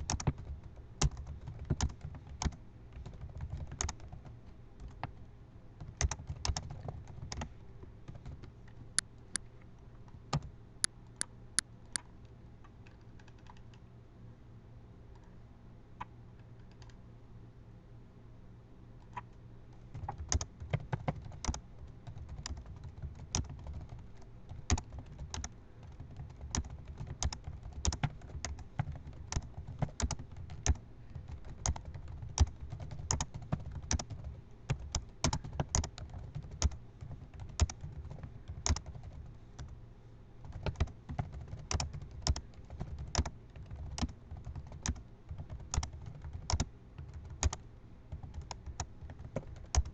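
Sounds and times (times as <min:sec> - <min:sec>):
fast typing on keyboard: 0:00.0 - 0:05.2, 0:05.8 - 0:07.5, 0:08.1 - 0:08.4, 0:13.2 - 0:13.7, 0:19.9 - 0:39.7, 0:40.4 - 0:49.9.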